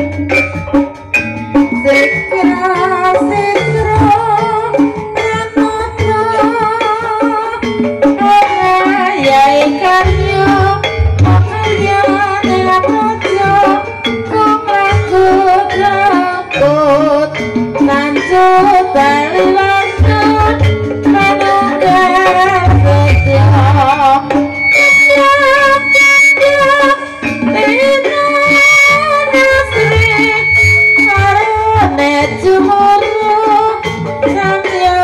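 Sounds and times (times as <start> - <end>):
gamelan music: 0.0 - 35.0
hand drum strokes: 0.0 - 35.0
sung melody: 0.0 - 35.0
high held note: 22.6 - 32.1.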